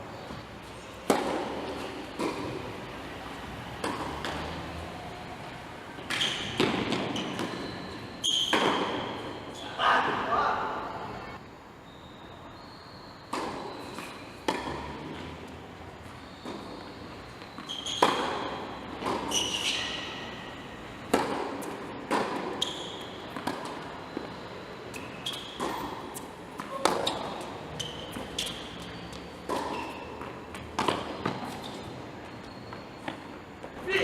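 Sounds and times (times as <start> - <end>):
ball impacts in echoing hall: 0.1 - 4.8, 5.9 - 11.2, 16.2 - 24.4, 25.0 - 34.0
short high squeaks: 6.1 - 9.8, 17.5 - 18.6, 19.2 - 20.4, 24.9 - 25.9, 27.0 - 30.2.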